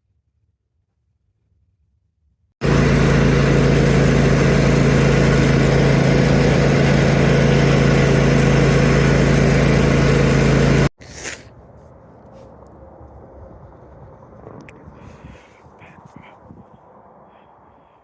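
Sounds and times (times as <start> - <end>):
loud engine running steadily: 2.6 - 10.9.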